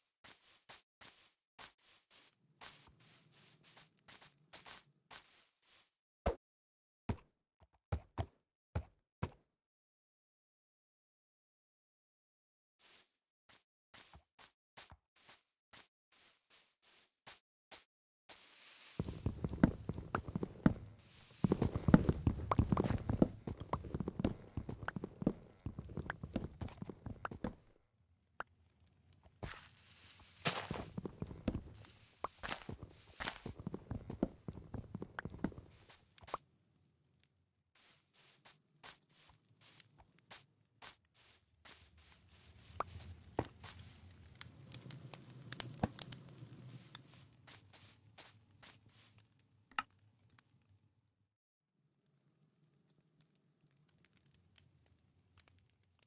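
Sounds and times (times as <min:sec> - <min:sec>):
faint scratchy rustles: 0:37.8 - 0:44.1, 0:46.6 - 0:49.2.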